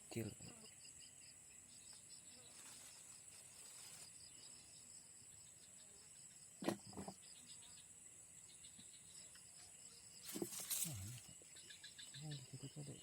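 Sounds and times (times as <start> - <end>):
crickets chirping: 0.0 - 13.0.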